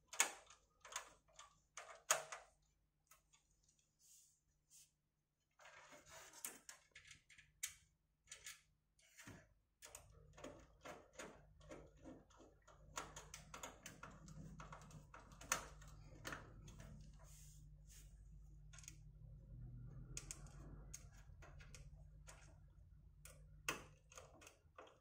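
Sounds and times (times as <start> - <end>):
clicking and tapping on metal: 20.2 - 25.0.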